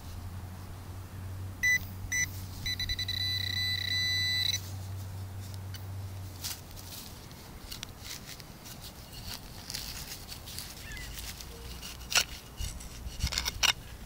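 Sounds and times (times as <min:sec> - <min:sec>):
hand tool scraping soil: 0:06.4 - 0:14.0.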